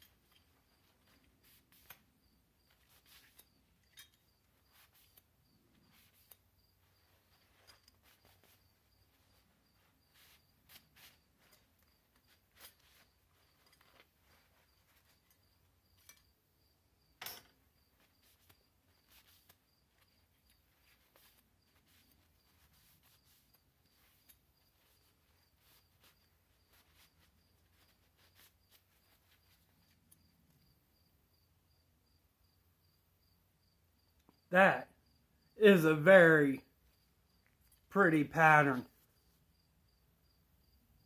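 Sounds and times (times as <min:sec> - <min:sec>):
faint clicks and handling noises: 0:00.0 - 0:16.4, 0:17.1 - 0:30.8.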